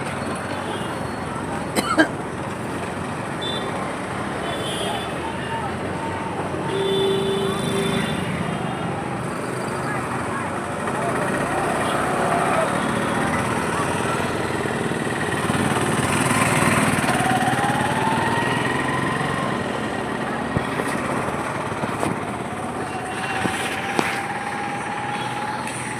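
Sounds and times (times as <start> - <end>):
bulldozer diesel engine running: 8.6 - 25.9.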